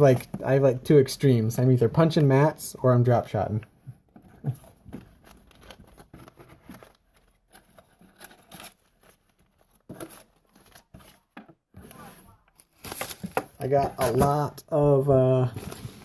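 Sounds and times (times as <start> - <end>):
packaging crinkling and rustling: 4.4 - 11.4.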